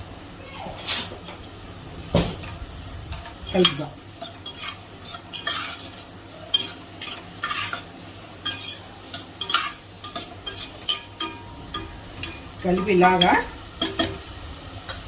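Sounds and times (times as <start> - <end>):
light sizzle of frying: 0.0 - 15.0
utensil scraping and tapping pan: 3.6 - 14.2.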